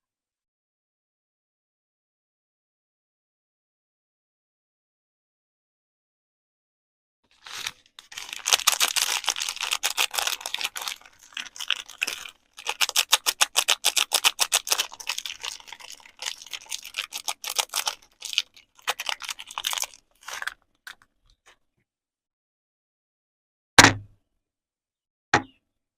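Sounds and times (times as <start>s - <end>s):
wrapper crinkling: 7.3s - 21.1s.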